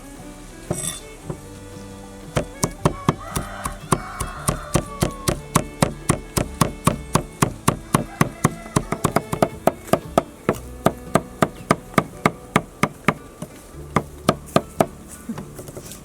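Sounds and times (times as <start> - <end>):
knife chopping on wooden board: 2.4 - 13.2.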